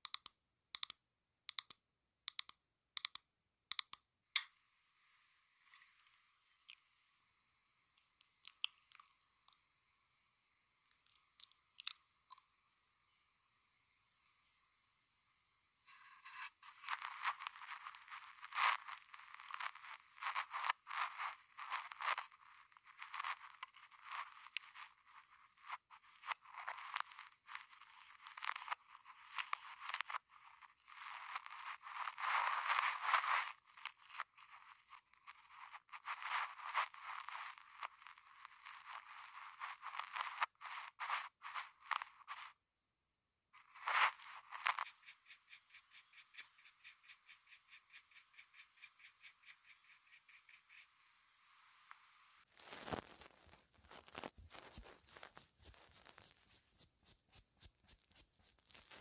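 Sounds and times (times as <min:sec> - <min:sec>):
crinkling and rustling of objects: 0:15.9 - 0:42.6, 0:43.6 - 0:45.0, 0:52.4 - 0:56.8, 0:57.9 - 0:59.0.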